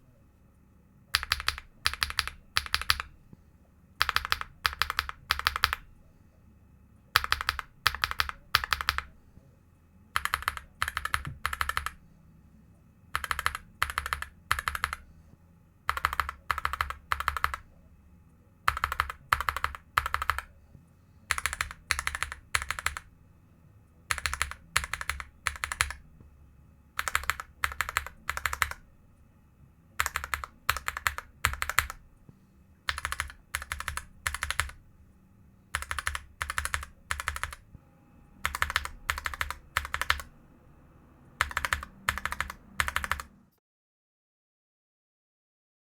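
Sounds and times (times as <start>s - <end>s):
keyboard switches clacking: 1.2s - 3.1s, 4.0s - 5.8s, 7.2s - 9.1s.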